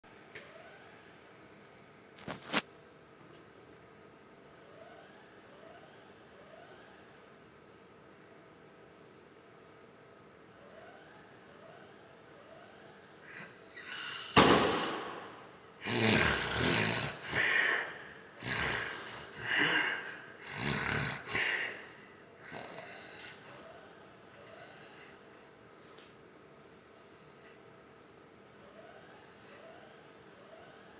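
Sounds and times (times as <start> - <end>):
person snoring: 13.3 - 23.7.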